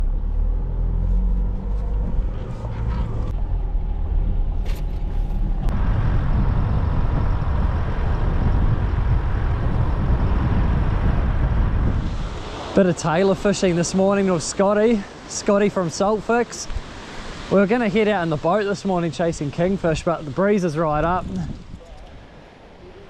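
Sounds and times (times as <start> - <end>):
vehicle engine rumbling: 0.0 - 13.5
steady rushing noise: 1.1 - 21.8.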